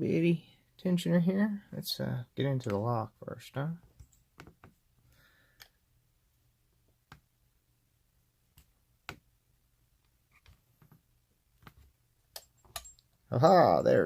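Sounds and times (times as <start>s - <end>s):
lockpicking tools clicking: 12.3s - 13.1s.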